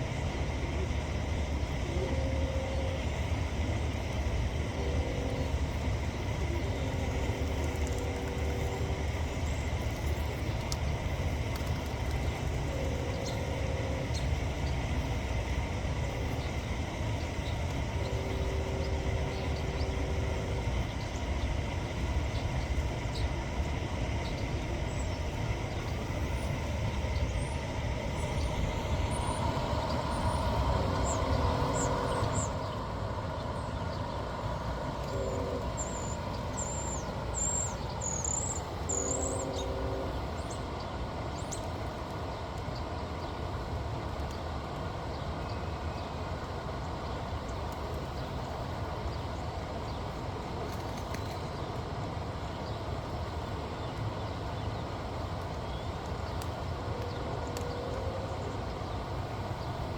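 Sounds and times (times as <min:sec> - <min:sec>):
vehicle traffic rumble: 0:00.0 - 0:59.9
short droning tones: 0:12.3 - 0:40.5.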